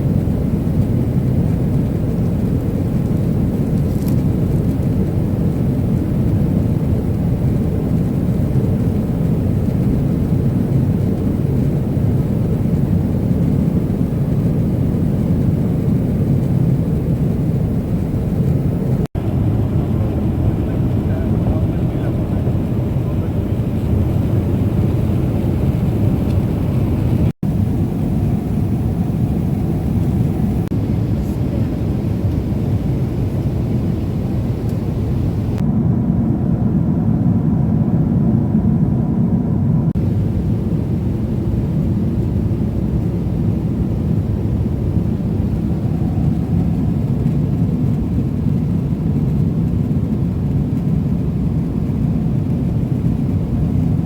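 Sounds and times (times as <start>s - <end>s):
jet engine roar inside cabin: 0.0s - 54.0s.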